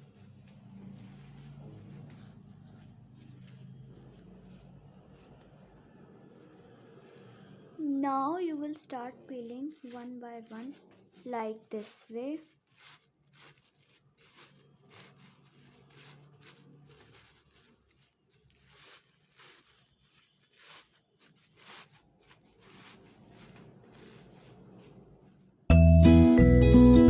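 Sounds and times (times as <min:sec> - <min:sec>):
tissue paper rustling: 0:00.0 - 0:25.8
guitar music: 0:25.7 - 0:27.0.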